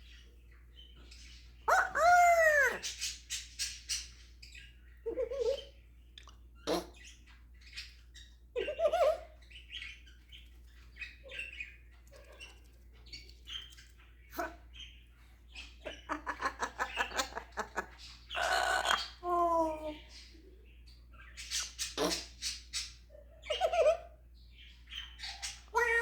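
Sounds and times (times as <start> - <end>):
parrot loud call: 1.7 - 2.9
parrot chirps and clicks: 6.1 - 8.0, 10.2 - 14.6.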